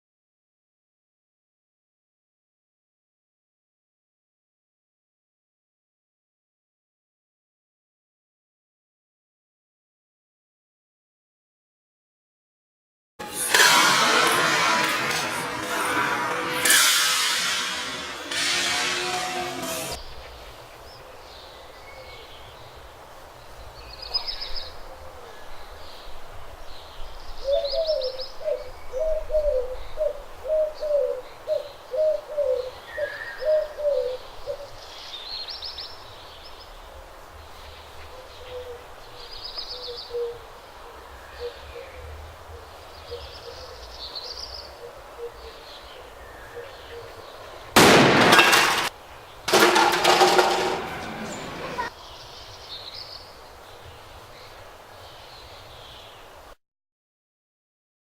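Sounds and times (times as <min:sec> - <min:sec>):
loud burst of noise: 0:13.2 - 0:20.0, 0:47.8 - 0:48.9
bird hooting: 0:27.4 - 0:34.7.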